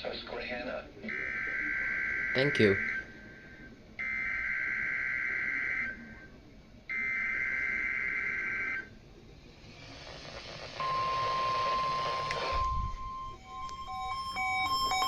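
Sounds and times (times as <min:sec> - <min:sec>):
steady alarm tone: 0:01.1 - 0:08.9, 0:10.4 - 0:15.0
radio hiss: 0:09.1 - 0:13.2.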